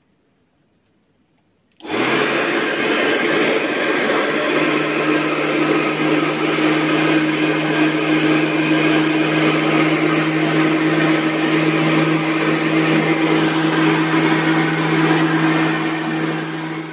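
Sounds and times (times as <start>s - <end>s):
vacuum cleaner motor running: 1.8s - 16.9s.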